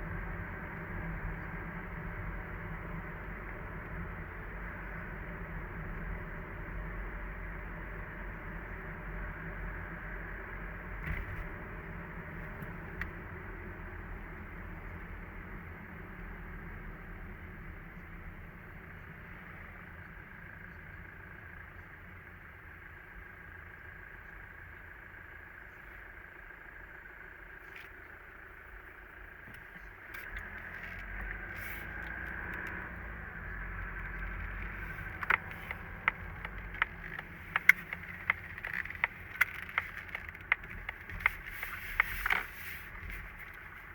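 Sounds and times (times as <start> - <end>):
diesel engine running: 0.0 - 43.9
sharp irregular clicks: 29.4 - 43.9.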